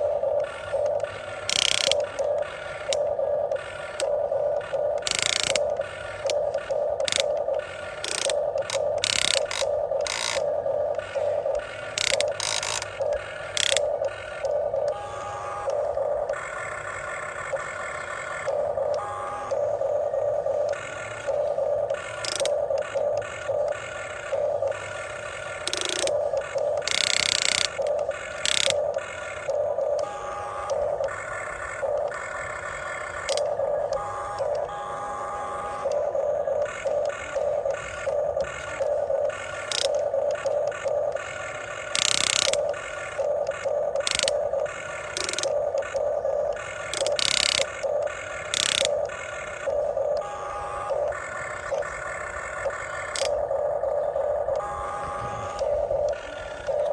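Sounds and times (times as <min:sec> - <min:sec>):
electric gear motors whining: 0:00.0 - 0:56.9
harsh noisy bursts: 0:00.0 - 0:56.9.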